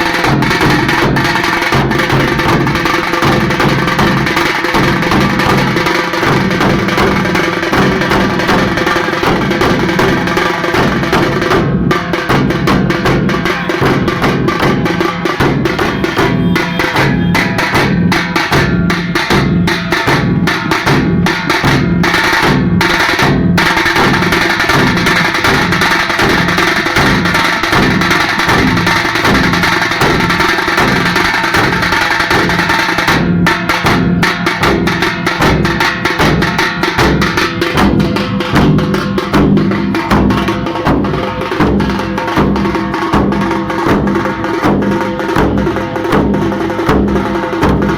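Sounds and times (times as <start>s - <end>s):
frame drums beaten fast: 0.0s - 47.9s.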